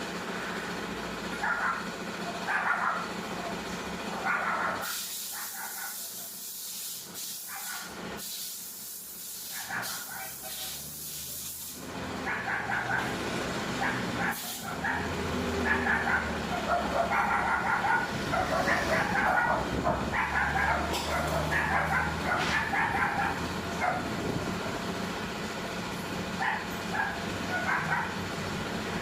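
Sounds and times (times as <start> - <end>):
dog barking and yipping: 1.4 - 3.6, 4.2 - 6.4, 7.4 - 7.9, 9.5 - 10.8, 12.2 - 13.2, 13.8 - 24.2, 26.4 - 28.3.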